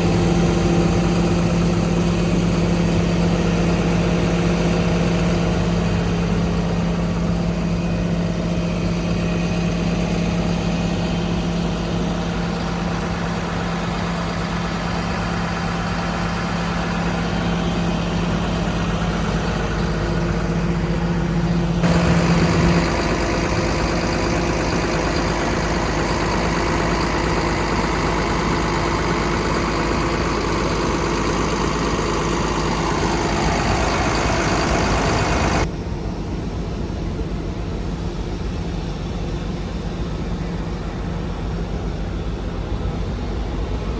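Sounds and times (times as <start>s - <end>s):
excavator diesel engine idling: 0.0s - 43.9s
steady low hum: 16.1s - 43.9s.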